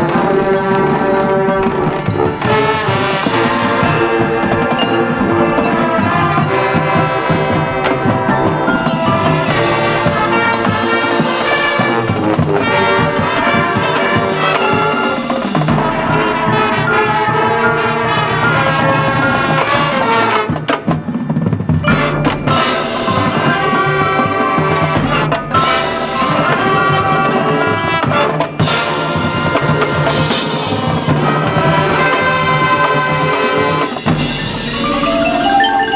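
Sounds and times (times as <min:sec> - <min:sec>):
drums and percussion: 0:00.0 - 0:35.9
marching band brass: 0:00.0 - 0:35.9.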